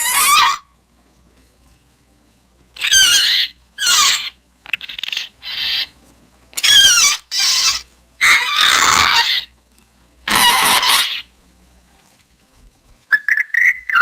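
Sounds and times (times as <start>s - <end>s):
creature squeaks and squeals: 0.0s - 0.7s, 2.8s - 5.9s, 6.6s - 9.5s, 10.3s - 11.3s, 13.1s - 14.0s.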